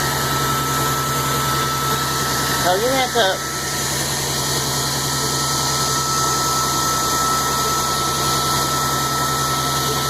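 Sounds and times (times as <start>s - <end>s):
blow dryer running: 0.0s - 10.0s.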